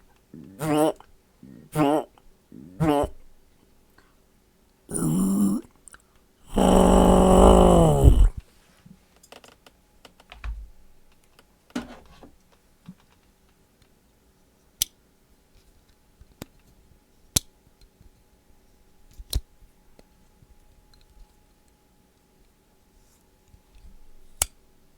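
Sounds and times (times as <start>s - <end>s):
man's voiced mouth sound effect: 0.4s - 3.2s, 4.9s - 5.7s, 6.5s - 8.4s.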